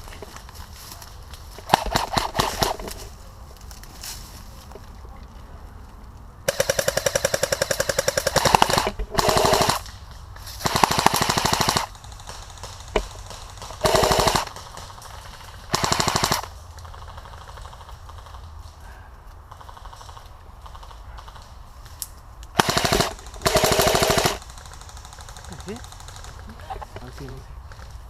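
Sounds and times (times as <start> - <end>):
airsoft rifle bursts: 1.6 - 3.1, 6.5 - 9.8, 10.6 - 18.5, 22.6 - 26.9.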